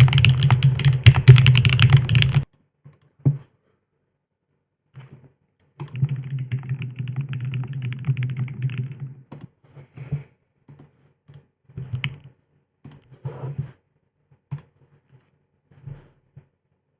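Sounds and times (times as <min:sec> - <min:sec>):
mechanical keyboard typing: 0:00.0 - 0:02.4, 0:05.8 - 0:09.2, 0:11.9 - 0:12.2.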